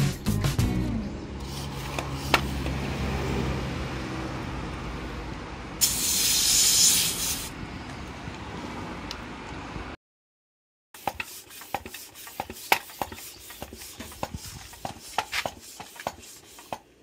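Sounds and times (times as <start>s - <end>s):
spray hissing: 5.8s - 7.6s.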